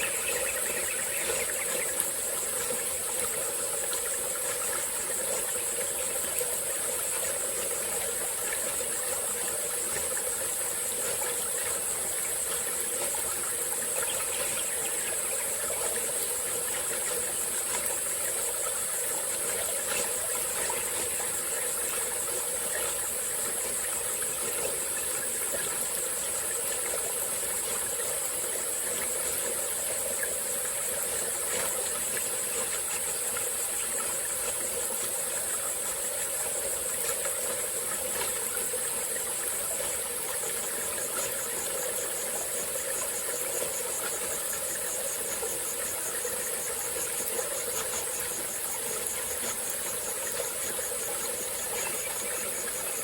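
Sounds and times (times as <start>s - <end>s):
high-pitched insect chorus: 0.0s - 53.0s
rapidly pulsing insect call: 0.0s - 53.0s
stream flowing and trickling: 0.0s - 53.0s.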